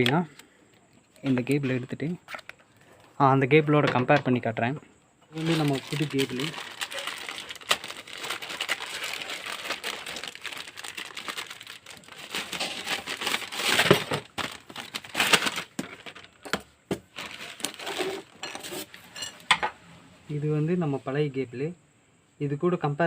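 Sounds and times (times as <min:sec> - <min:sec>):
cable crinkling and rustling: 0:05.3 - 0:18.4.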